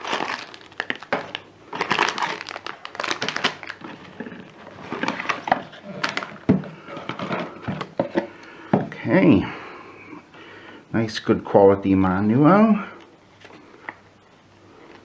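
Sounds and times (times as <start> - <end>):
packaging crinkling and rustling: 0.0 - 8.4, 13.3 - 14.0.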